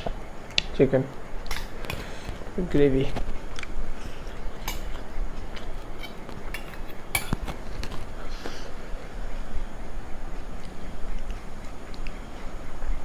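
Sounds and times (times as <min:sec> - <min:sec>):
utensil clinking on plate: 0:01.5 - 0:03.4, 0:04.0 - 0:08.1.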